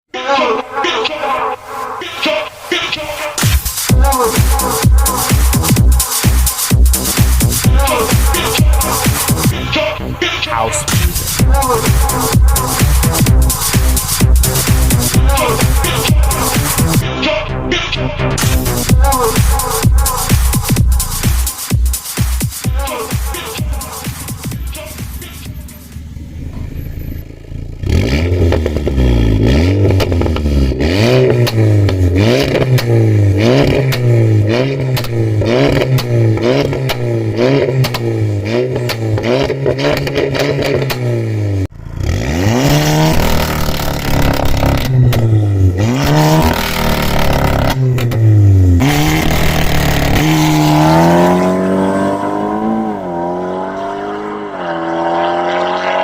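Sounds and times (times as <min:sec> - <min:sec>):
car engine revving: 0:00.7 - 0:56.0
exhaust pops and bangs: 0:29.7 - 0:30.5, 0:31.2 - 0:41.2, 0:42.7 - 0:51.3.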